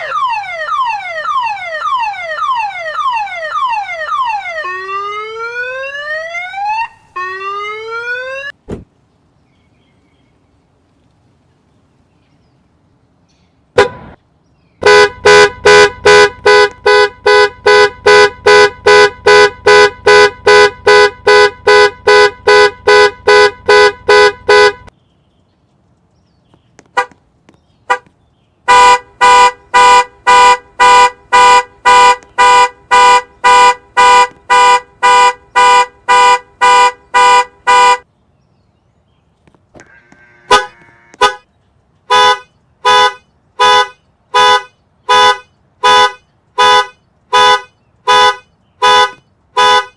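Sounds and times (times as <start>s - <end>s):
car horn alarm honking: 13.8s - 14.2s, 14.8s - 24.9s, 28.7s - 38.0s, 39.8s - 41.5s, 42.1s - 49.9s
car alarm chirps: 14.8s - 24.9s, 28.7s - 38.0s.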